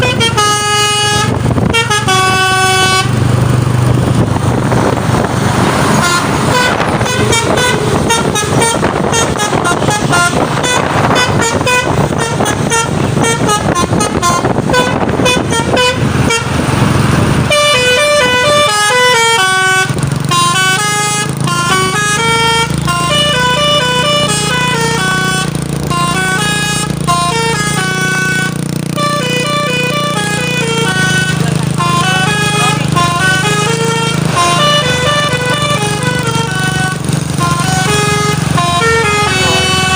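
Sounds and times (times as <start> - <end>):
truck horn playing a multi-note tune: 0.0 - 39.9
loud rushing noise: 3.0 - 18.7.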